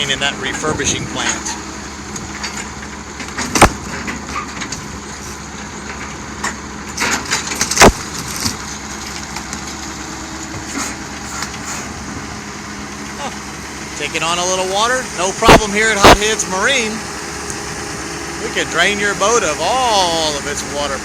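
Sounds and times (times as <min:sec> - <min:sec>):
heavy equipment engine running: 0:00.0 - 0:21.0
boat hull cracking: 0:01.4 - 0:04.9, 0:07.0 - 0:09.8
crunching and splintering: 0:06.9 - 0:10.0.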